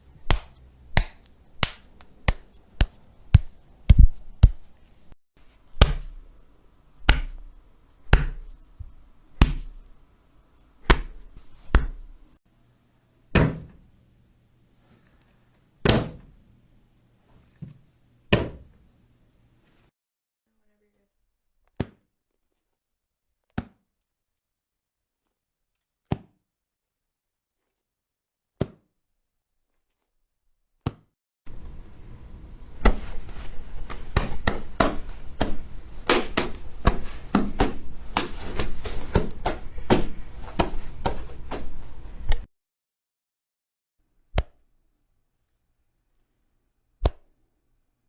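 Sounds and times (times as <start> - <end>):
punch impacts: 33.9 - 41.7.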